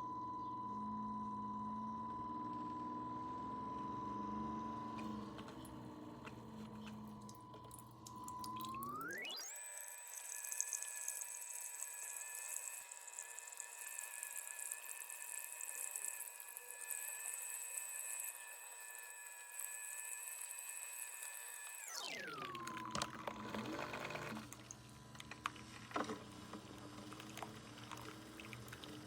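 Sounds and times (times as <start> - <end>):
coffee maker pump whining: 0.0 - 29.0
water gurgling into a cup: 6.8 - 17.8, 22.0 - 29.0.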